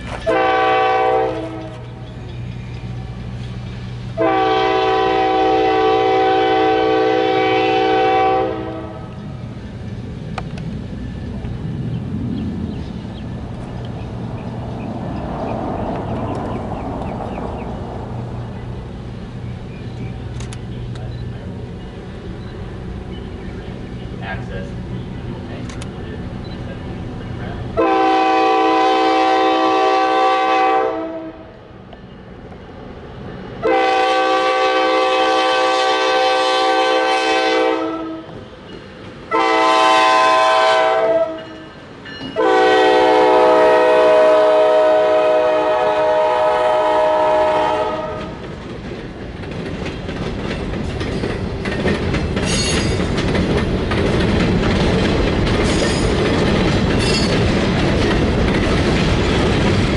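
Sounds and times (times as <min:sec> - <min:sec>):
train rumbling past: 0:00.0 - 0:59.9
locomotive air horn blasts: 0:00.2 - 0:01.9, 0:04.2 - 0:09.1, 0:27.8 - 0:31.6, 0:33.6 - 0:38.3, 0:39.3 - 0:41.7, 0:42.4 - 0:48.4
wheels clicking over rail joints: 0:09.1 - 0:27.8, 0:48.0 - 0:59.9.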